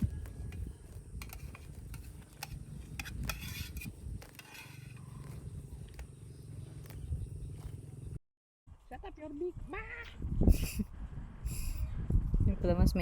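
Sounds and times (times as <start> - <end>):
short scrapes: 1.2 - 5.4.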